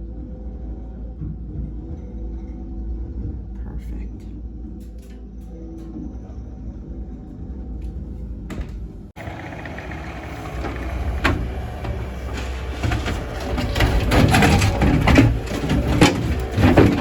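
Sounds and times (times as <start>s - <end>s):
heavy equipment engine running: 8.6s - 17.0s
concrete clattering: 9.2s - 17.0s.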